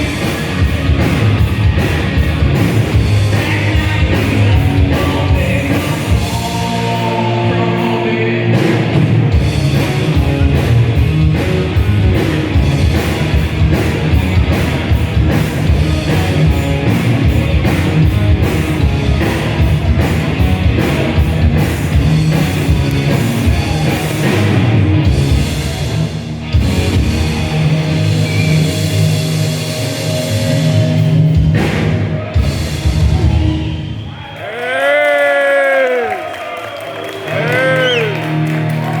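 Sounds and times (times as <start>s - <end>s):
fast dense drumming: 0.0s - 7.1s, 8.6s - 27.5s
distorted guitars: 0.0s - 34.0s.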